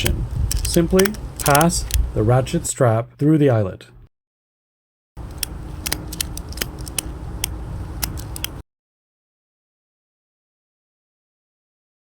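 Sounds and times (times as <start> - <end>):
metal ratchet clicks: 0.0 - 2.0, 5.2 - 8.6.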